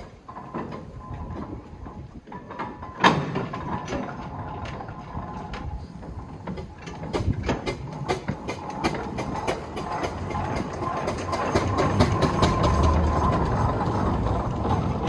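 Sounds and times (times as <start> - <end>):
steam engine gearing clanking: 0.0 - 15.0
low engine rumble: 4.2 - 15.0.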